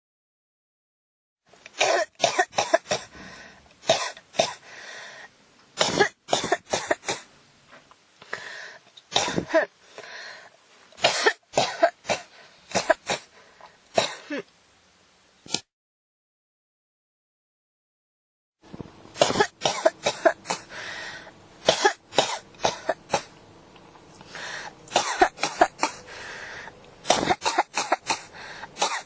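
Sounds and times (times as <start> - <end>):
person coughing: 1.8 - 3.1, 5.8 - 7.2, 9.1 - 9.7, 11.0 - 13.3, 14.0 - 14.5, 19.2 - 20.7, 21.6 - 23.3, 24.9 - 26.1, 27.0 - 29.0.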